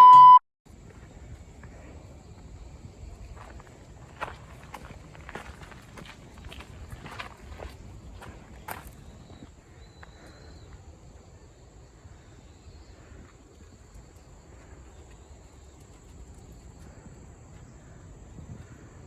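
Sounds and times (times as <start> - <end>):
short high chirp: 0.0 - 0.4
crickets chirring: 0.8 - 19.0.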